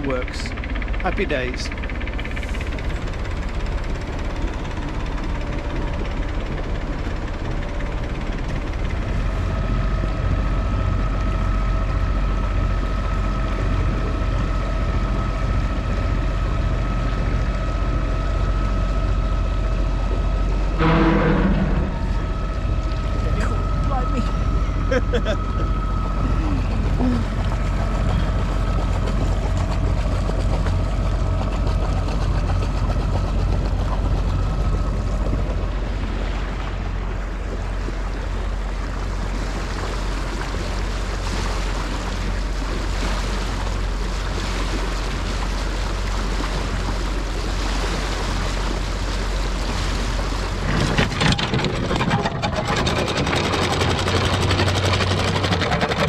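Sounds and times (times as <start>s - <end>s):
boat engine running: 0.0s - 56.0s
wind: 0.0s - 56.0s
water rushing: 19.6s - 24.9s.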